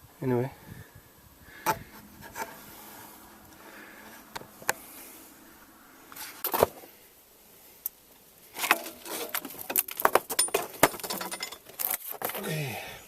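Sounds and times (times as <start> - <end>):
tools and car parts clattering: 8.5 - 12.4.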